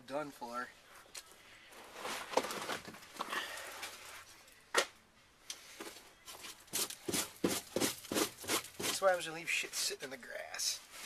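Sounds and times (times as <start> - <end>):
scraping on rusted metal: 6.7 - 9.1.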